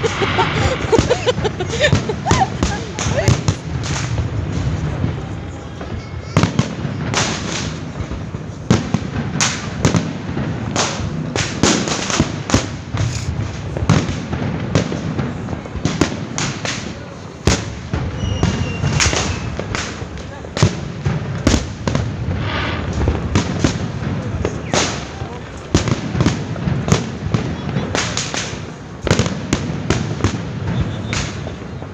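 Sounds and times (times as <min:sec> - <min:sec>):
distant explosions: 0:00.0 - 0:31.9
fireworks bangs and crackles: 0:00.0 - 0:31.9.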